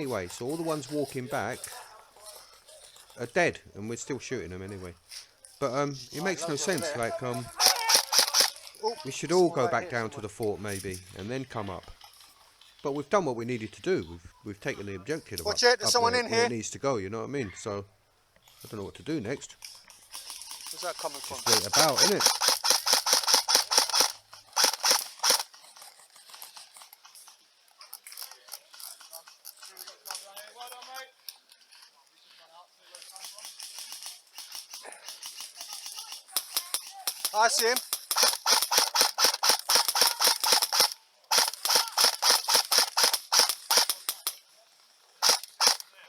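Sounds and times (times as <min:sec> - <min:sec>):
airsoft gun firing clicks: 0:07.6 - 0:08.6, 0:21.4 - 0:25.5, 0:33.4 - 0:44.4, 0:45.2 - 0:45.8.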